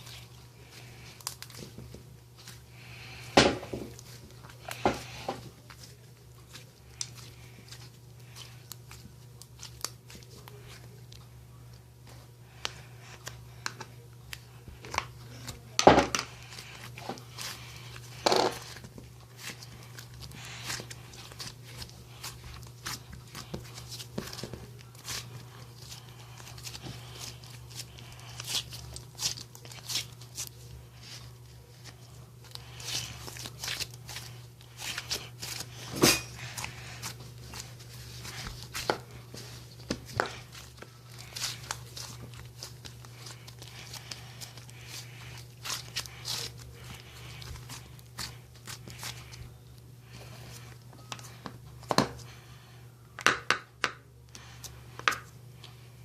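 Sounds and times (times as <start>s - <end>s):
steady low hum: 0.0s - 56.0s
crinkling and rustling: 13.0s - 52.3s.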